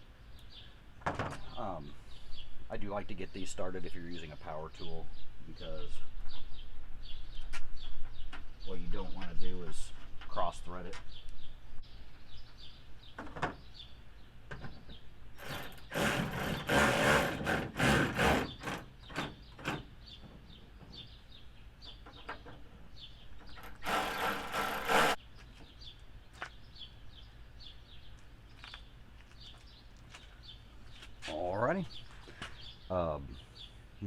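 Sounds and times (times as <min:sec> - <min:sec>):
power tool driving bolts: 0:15.4 - 0:19.9, 0:23.6 - 0:25.2.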